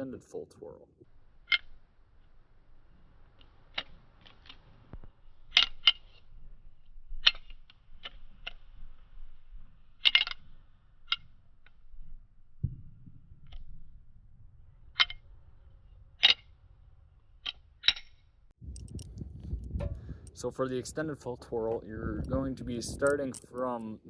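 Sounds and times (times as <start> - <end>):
butterfly knife handles clicking: 21.7 - 24.0.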